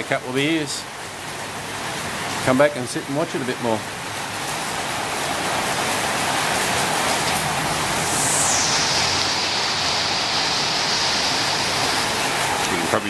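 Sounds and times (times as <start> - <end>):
rain on a tin roof: 0.0 - 7.4, 9.6 - 13.0
high-pitched hiss sliding down: 6.5 - 11.8.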